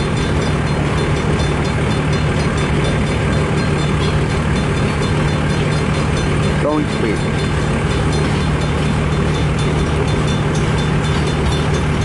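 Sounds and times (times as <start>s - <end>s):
freight train wheels rumbling on rail: 0.0s - 12.0s.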